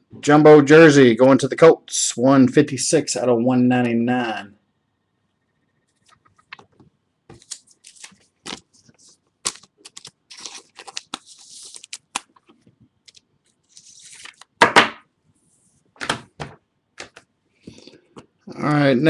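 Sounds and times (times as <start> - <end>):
plastic packaging crinkling: 7.3 - 14.6.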